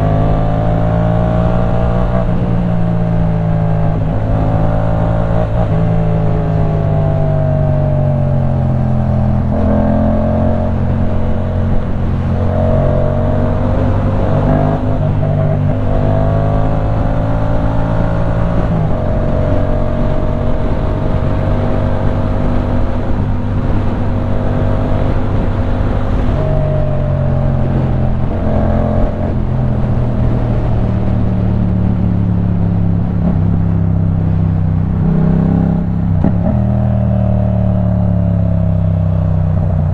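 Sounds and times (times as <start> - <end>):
wind and road noise: 0.0 - 39.9.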